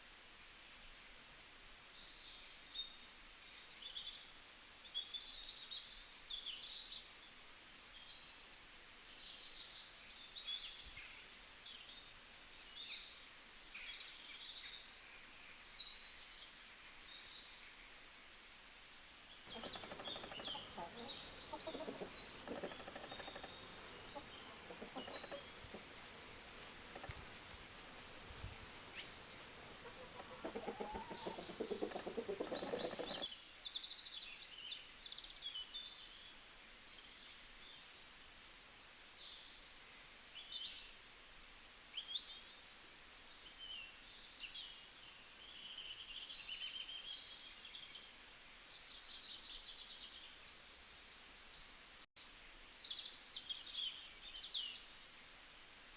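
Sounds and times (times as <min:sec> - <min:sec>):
background noise: 0:00.0 - 0:55.9
birds calling: 0:19.5 - 0:33.3
small birds chirping: 0:19.5 - 0:33.3.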